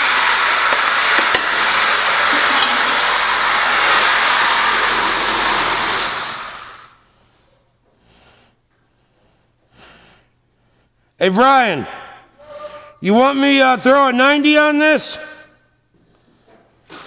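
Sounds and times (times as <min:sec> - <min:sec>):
power pipe threader running: 0:00.0 - 0:06.8.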